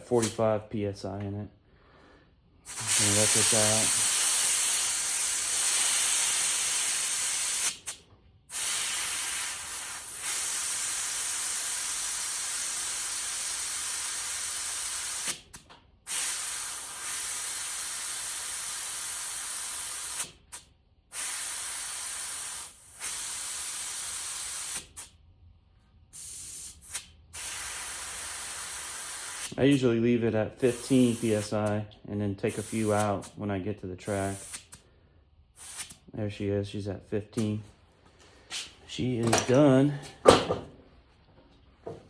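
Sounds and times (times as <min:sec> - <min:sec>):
air hissing from tire valve: 0:02.7 - 0:15.5, 0:16.1 - 0:25.2, 0:26.1 - 0:29.6, 0:30.7 - 0:31.6, 0:34.2 - 0:34.8, 0:35.5 - 0:36.0.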